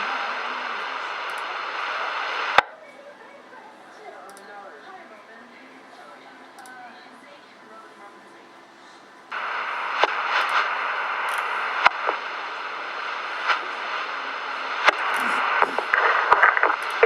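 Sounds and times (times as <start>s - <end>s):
radio scanner static: 0.0s - 5.6s, 9.3s - 17.0s.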